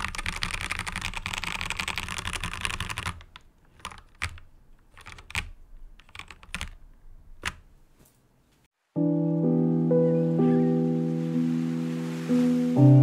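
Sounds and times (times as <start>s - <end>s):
mechanical keyboard typing: 0.0s - 6.8s, 7.4s - 7.6s.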